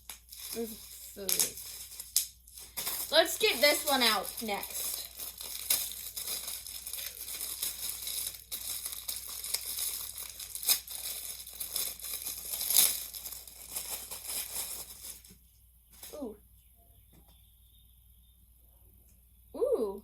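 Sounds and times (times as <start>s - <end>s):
plastic packaging crinkling and tearing: 0.0s - 15.4s.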